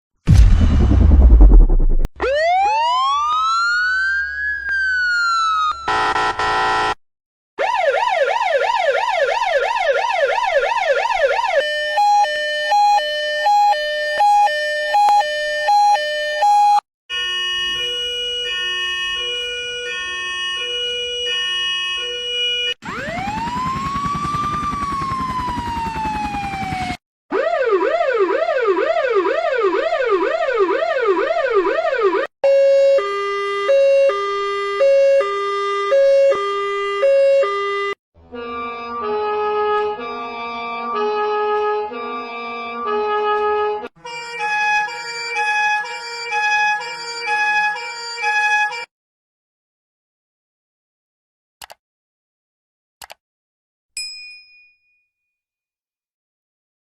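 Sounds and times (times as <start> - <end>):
horn blast: 0.3 - 2.1
two-tone hi-lo siren: 0.3 - 7.0, 7.6 - 38.0, 44.0 - 48.9
ambulance siren wailing: 2.2 - 6.7, 7.6 - 38.0, 44.0 - 48.9
fast yelp siren: 2.2 - 6.7, 7.6 - 38.0, 44.1 - 48.9.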